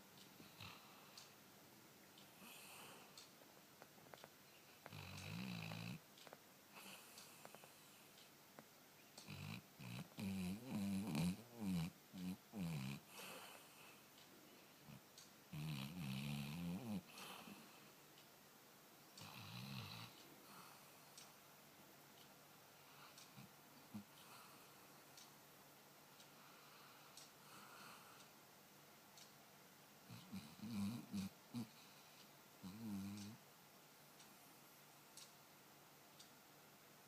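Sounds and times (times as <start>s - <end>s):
pet snoring: 4.8s - 6.0s, 9.2s - 13.9s, 14.9s - 17.8s, 19.2s - 20.8s, 30.1s - 33.4s.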